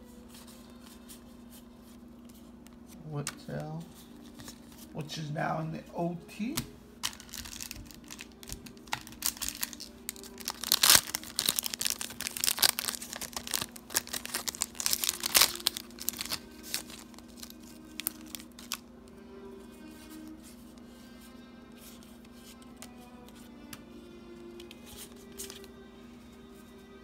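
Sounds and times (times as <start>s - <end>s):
faint steady hum: 0.0s - 27.0s
foil packs crinkling and tearing: 7.0s - 18.9s.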